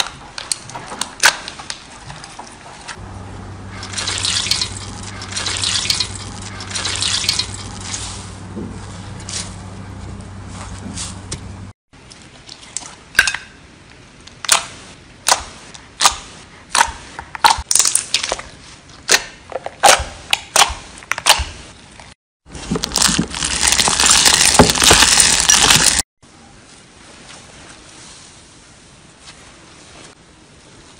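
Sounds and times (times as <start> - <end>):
slime squeezed by hand crunching: 22.7 - 26.0.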